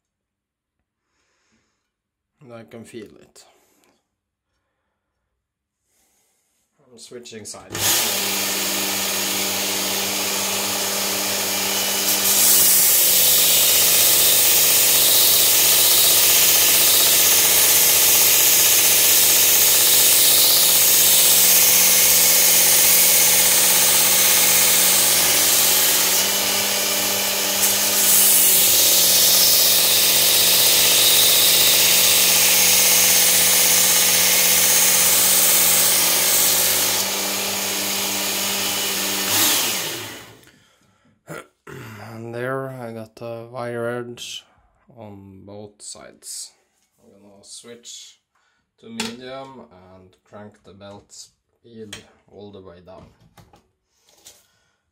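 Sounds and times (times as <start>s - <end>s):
knife grinding on abrasive belt: 11.4s - 37.2s.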